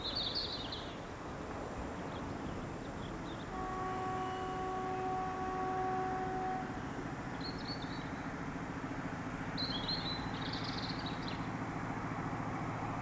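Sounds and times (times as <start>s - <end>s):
train air horn: 3.5s - 7.0s.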